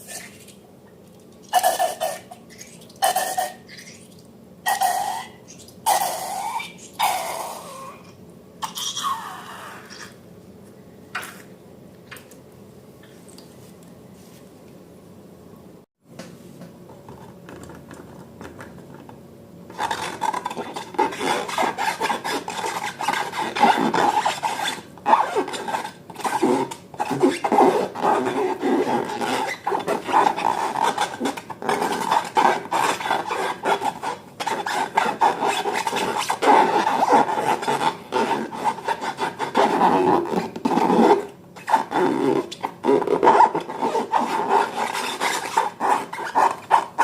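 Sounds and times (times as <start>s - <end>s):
slime being mixed: 19.7s - 47.0s.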